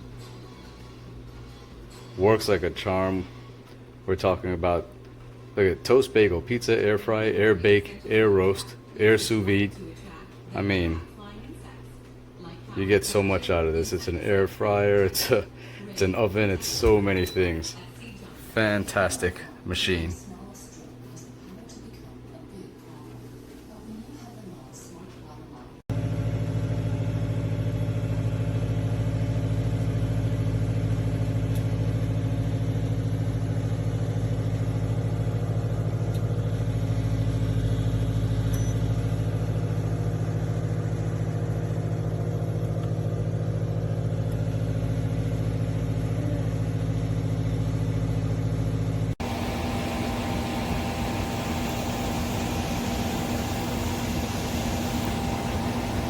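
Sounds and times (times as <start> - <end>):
air fryer fan humming: 0.0 - 24.0, 24.6 - 56.0
hissy higher whir: 49.2 - 56.0.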